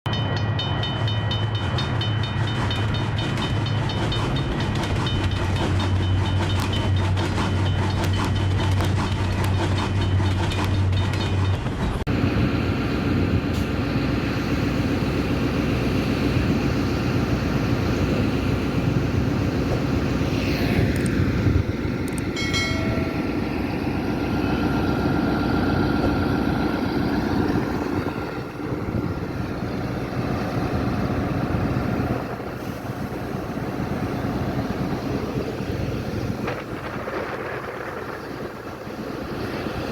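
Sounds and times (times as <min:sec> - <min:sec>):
train wheels clattering: 0:00.1 - 0:12.1
low hum: 0:00.1 - 0:39.9.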